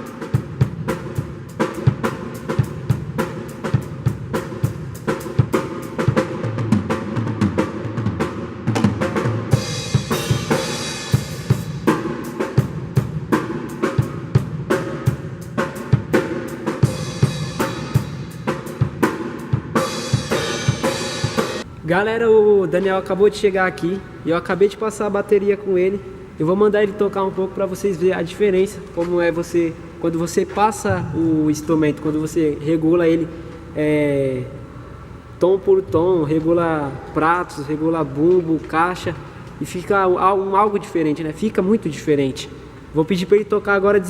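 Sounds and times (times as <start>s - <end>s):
drum kit beat: 0.0s - 21.7s
cymbal crashes: 9.5s - 15.4s, 16.1s - 21.6s.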